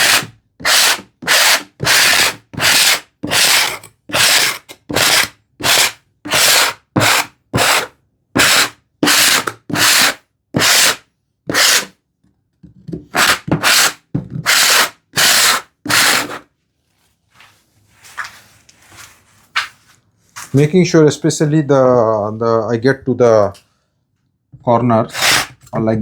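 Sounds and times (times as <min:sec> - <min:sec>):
handsaw teeth rasping on wood: 0:00.0 - 0:11.9, 0:13.1 - 0:16.4, 0:25.1 - 0:25.6.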